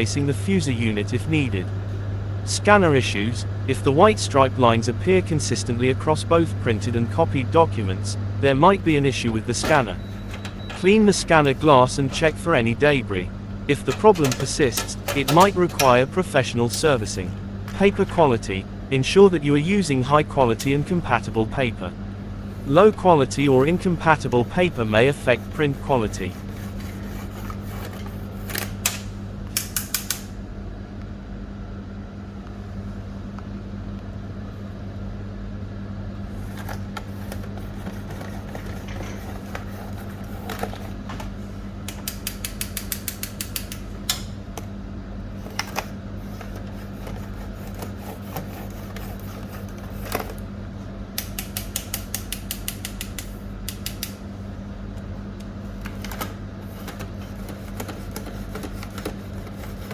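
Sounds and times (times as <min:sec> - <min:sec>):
low hum: 0:00.0 - 0:42.0
rapid mechanical clicking: 0:13.7 - 0:16.1, 0:22.7 - 0:30.3, 0:41.8 - 0:44.3, 0:51.2 - 0:54.2, 0:55.8 - 0:59.9.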